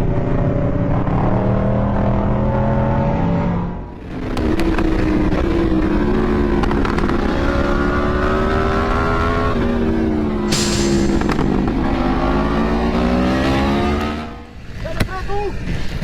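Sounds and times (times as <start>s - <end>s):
motorcycle engine accelerating: 4.0s - 14.5s.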